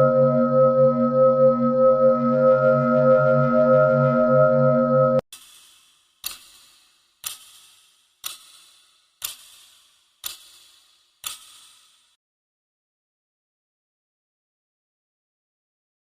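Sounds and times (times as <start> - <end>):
sharp ticks with short hiss: 5.4 - 12.2.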